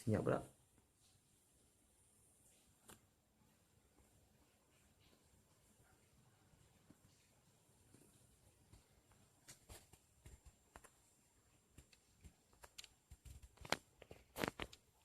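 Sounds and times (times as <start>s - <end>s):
faint clicks and taps: 2.4s - 3.2s, 3.8s - 15.0s.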